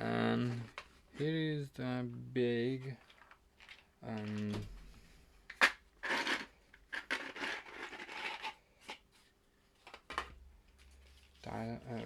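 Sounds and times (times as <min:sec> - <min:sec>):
plastic scraping and rubbing: 0:05.6 - 0:09.0.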